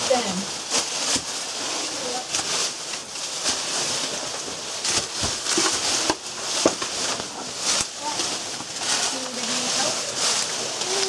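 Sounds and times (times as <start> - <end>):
rustling and scraping against rock: 0.0 - 11.0.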